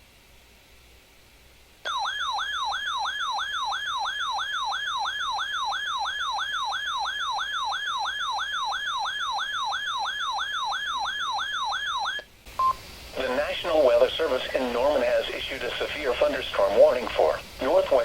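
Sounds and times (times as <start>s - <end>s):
electronic alarm siren: 1.9s - 12.3s.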